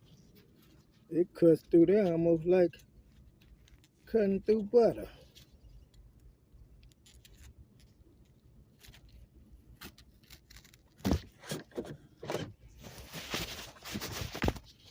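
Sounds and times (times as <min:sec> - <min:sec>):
cutter tearing through webbing: 0:08.7 - 0:11.6.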